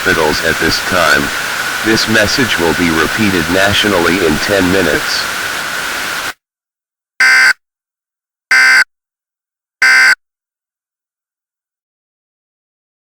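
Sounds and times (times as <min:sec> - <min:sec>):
short electronic data bursts: 0:07.2 - 0:07.6, 0:08.5 - 0:08.8, 0:09.8 - 0:10.2.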